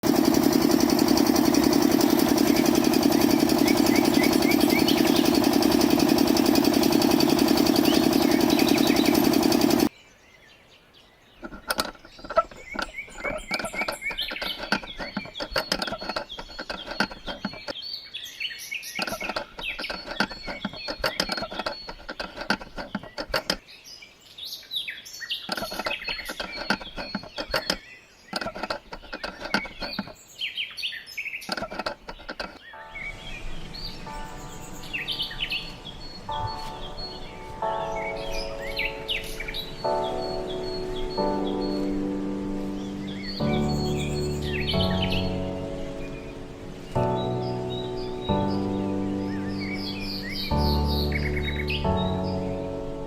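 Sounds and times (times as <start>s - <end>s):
loud droning hum: 0.0s - 9.9s, 32.8s - 53.0s
birds chirping: 0.0s - 53.0s
clicks and taps: 11.4s - 17.7s, 19.0s - 23.6s, 25.5s - 27.8s, 28.4s - 30.2s, 31.5s - 32.6s.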